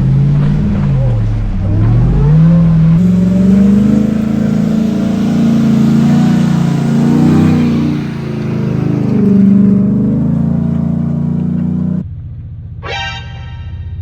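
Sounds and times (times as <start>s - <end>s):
vehicle engine revving: 0.0s - 12.1s.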